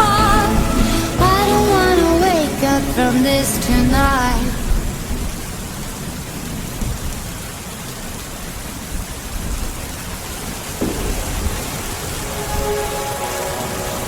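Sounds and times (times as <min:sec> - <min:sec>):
steady rain: 0:00.0 - 0:14.0
thunder rumbling: 0:10.4 - 0:14.0.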